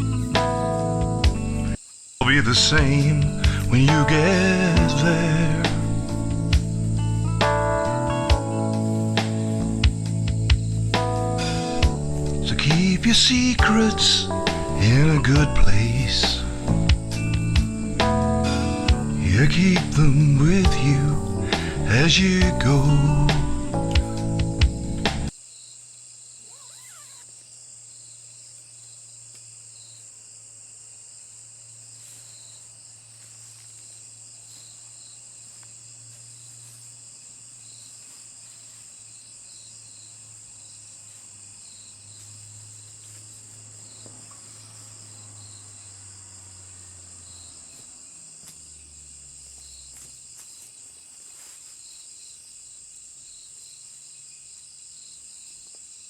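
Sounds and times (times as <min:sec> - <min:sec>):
faint low hum: 0:00.0 - 0:25.3
insects chirping: 0:00.0 - 0:56.0.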